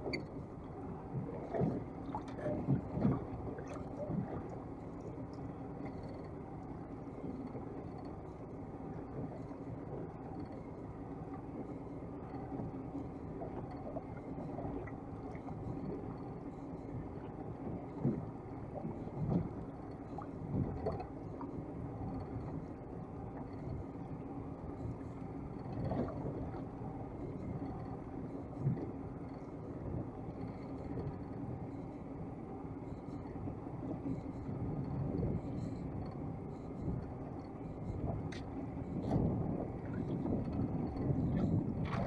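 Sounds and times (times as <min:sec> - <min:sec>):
boat engine running: 0:00.0 - 0:42.0.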